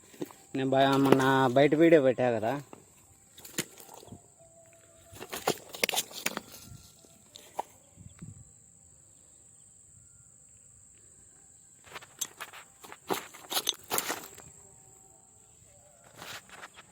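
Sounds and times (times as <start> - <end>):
knocks and rustles: 0.0 - 1.7, 5.1 - 7.7, 11.9 - 14.5
high insect drone: 0.0 - 16.9.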